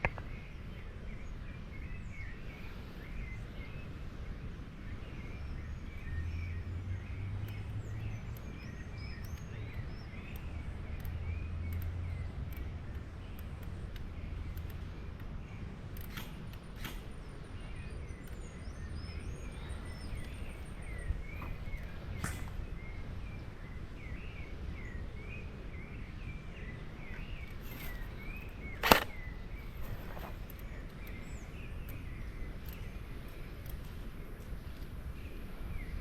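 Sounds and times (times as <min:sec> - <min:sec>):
low wind rumble: 0:00.0 - 0:36.0
small birds chirping: 0:00.0 - 0:36.0
sharp clicks: 0:15.9 - 0:17.1, 0:27.4 - 0:31.2.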